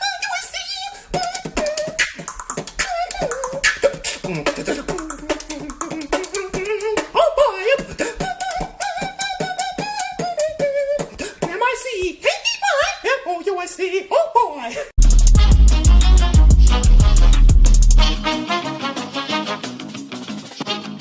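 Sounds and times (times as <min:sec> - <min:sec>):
person beatboxing: 0:00.1 - 0:12.2
voiced melody line: 0:15.0 - 0:19.6.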